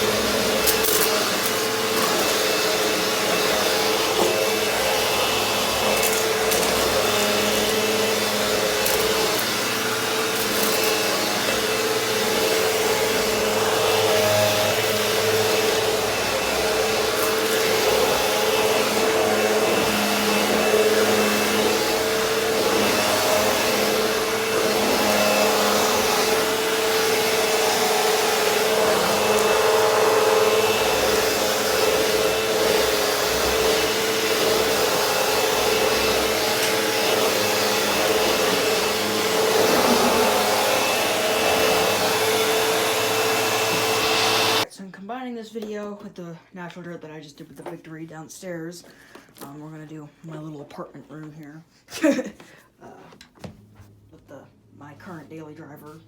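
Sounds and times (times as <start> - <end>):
upright vacuum running: 0.0 - 44.7.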